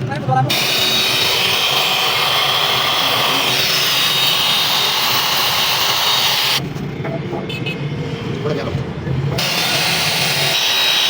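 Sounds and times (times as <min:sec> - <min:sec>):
power tool on metal: 0:00.5 - 0:06.6, 0:09.3 - 0:11.0.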